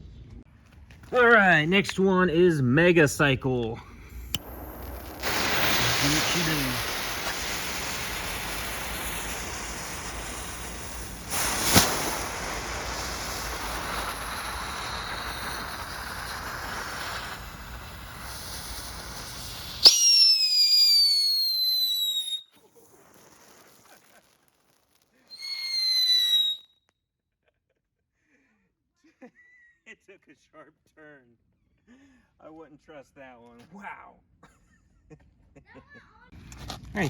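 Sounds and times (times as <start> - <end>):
firework crack: 1.1 - 26.6
firework hissing: 3.8 - 26.6
firework whistle: 4.0 - 24.2, 25.3 - 26.7.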